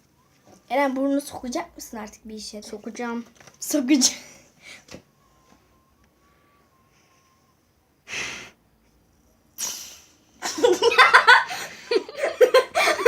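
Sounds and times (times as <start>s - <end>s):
sneeze-like nasal puffs: 8.1s - 8.6s, 9.6s - 10.3s
giggling laughter: 10.4s - 13.0s.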